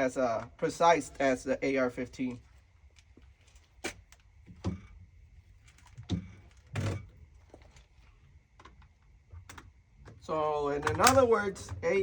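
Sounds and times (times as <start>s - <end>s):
dull knocks and thumps: 4.4s - 4.9s.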